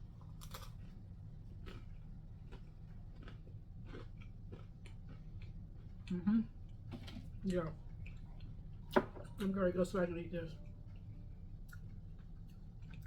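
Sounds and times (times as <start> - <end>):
low steady hum: 0.0 - 13.0
person chewing: 0.2 - 6.2.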